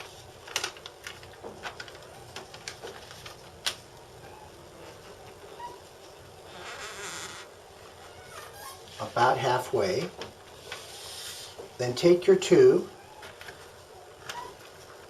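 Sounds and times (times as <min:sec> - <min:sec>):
decal peeling crackles: 0:00.0 - 0:09.1.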